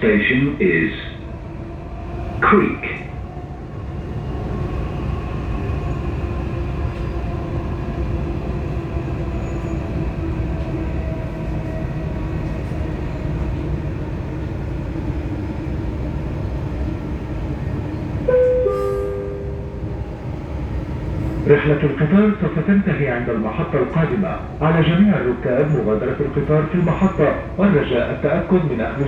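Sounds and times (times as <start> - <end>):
train carriage rumble: 0.0 - 29.0
two-note descending chime: 18.3 - 20.0.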